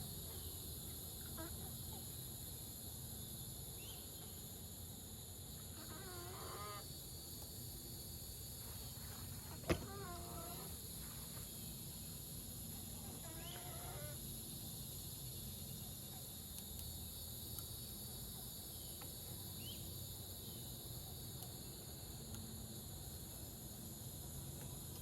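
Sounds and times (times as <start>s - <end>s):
chicken calling: 5.8s - 6.8s, 9.8s - 10.7s, 13.0s - 14.2s.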